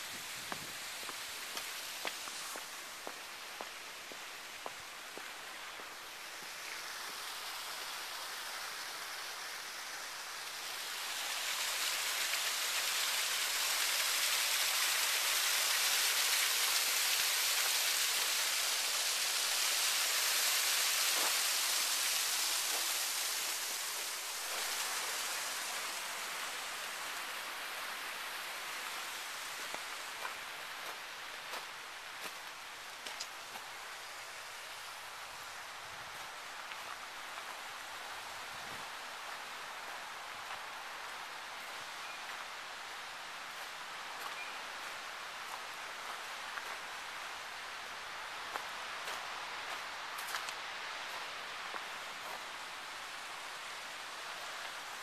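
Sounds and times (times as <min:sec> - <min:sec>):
waterfall splashing: 0:00.0 - 0:55.0.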